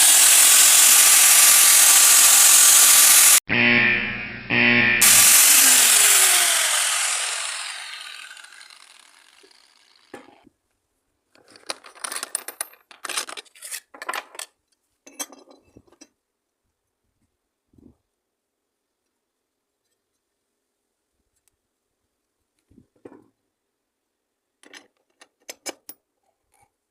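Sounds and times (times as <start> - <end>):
angle grinder winding down: 0.0 - 3.4, 5.0 - 10.1
metal parts clinking and rattling: 11.4 - 14.5.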